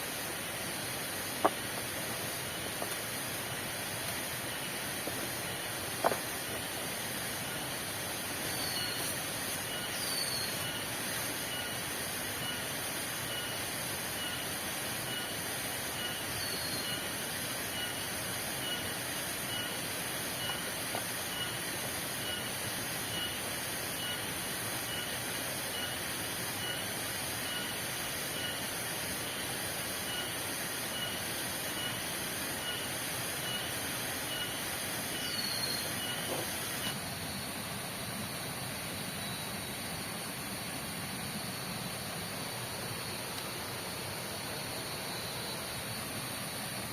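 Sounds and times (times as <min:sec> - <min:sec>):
faint repeating chirp: 0:07.4 - 0:37.0.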